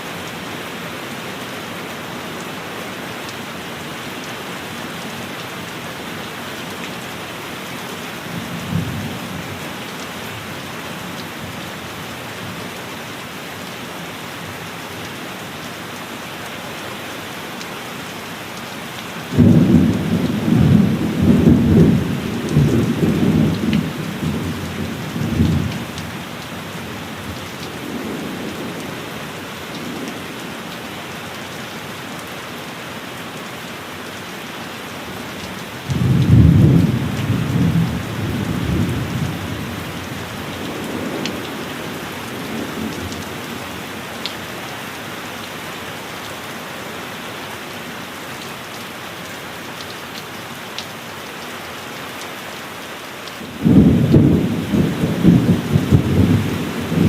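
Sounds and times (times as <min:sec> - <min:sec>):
heavy rain: 0:00.0 - 0:57.0
rolling thunder: 0:35.9 - 0:39.4, 0:53.6 - 0:57.0.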